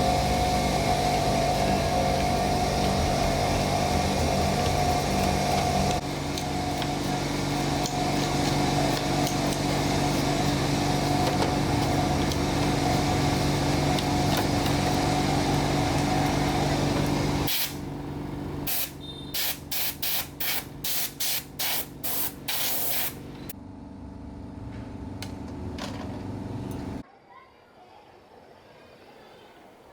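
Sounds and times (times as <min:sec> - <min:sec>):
motor running with hum: 0:00.0 - 0:19.4
short hissing sprays: 0:17.5 - 0:17.8, 0:18.7 - 0:23.2.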